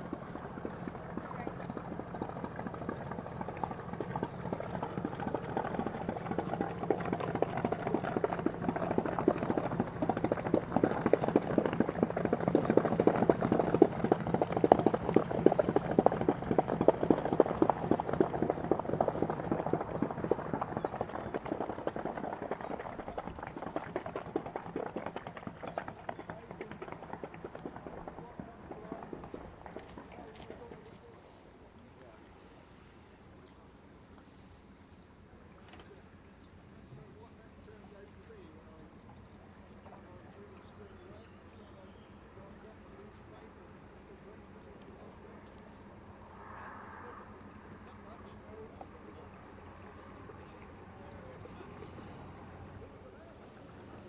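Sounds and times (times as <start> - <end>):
boat engine chugging: 0.0 - 31.6, 47.3 - 54.0.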